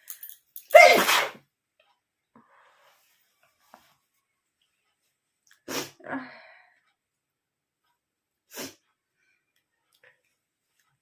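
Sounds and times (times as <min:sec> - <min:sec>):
person sneezing: 0:00.7 - 0:01.4.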